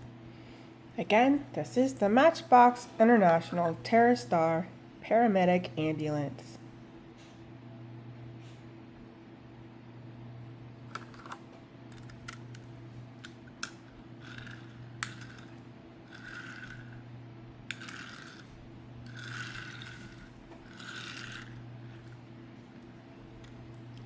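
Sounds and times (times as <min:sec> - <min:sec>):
low electrical hum: 0:00.0 - 0:24.0
toy handling clicks: 0:10.9 - 0:12.6, 0:13.2 - 0:16.9, 0:17.7 - 0:18.5, 0:19.1 - 0:22.2.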